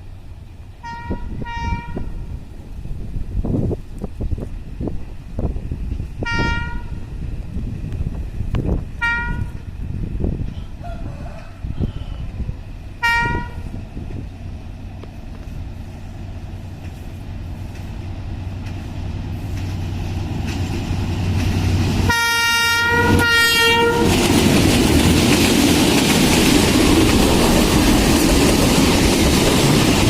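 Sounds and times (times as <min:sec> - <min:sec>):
train rumbling: 0:00.0 - 0:30.0
train horn blasts: 0:00.8 - 0:02.2, 0:06.2 - 0:07.0, 0:09.0 - 0:09.7, 0:13.0 - 0:13.8, 0:22.0 - 0:24.2.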